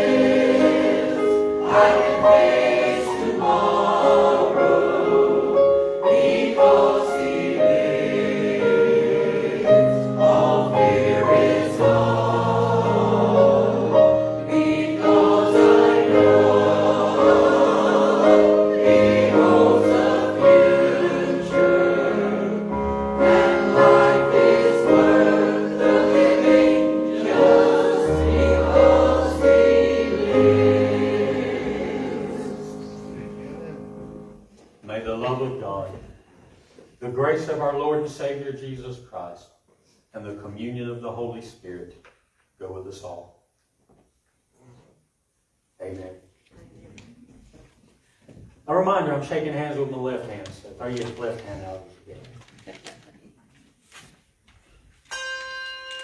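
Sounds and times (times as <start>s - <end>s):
choir singing a hymn: 0.0s - 34.5s.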